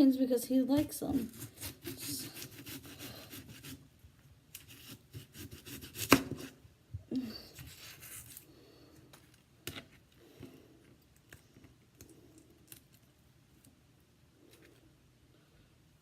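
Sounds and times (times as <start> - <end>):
knife cutting onion on board: 0.8 - 3.8, 4.6 - 6.6.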